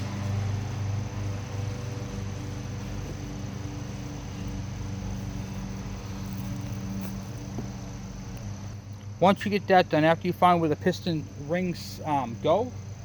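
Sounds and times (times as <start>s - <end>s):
machine hum with hiss: 0.0s - 13.0s.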